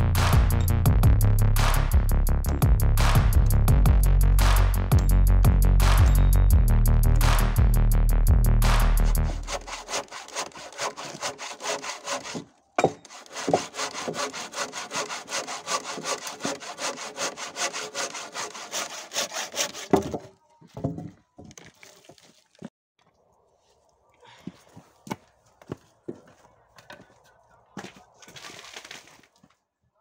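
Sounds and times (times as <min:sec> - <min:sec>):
hand saw cutting wood: 0:08.7 - 0:20.3.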